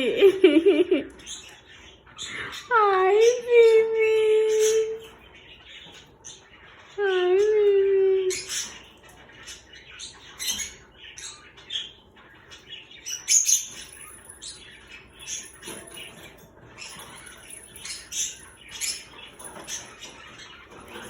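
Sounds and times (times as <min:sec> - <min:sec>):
birds chirping and squawking: 0:00.0 - 0:21.0.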